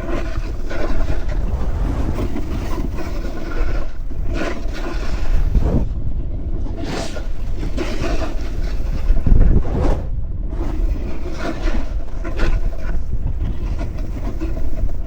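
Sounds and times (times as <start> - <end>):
wind rumbling on microphone: 0.0 - 15.0
snowboard sliding over snow: 0.1 - 5.9.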